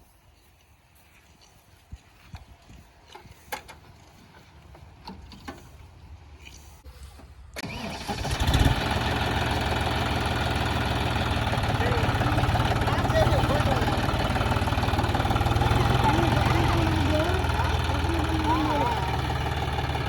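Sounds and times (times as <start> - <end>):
diesel tractor engine starting: 7.1 - 20.0.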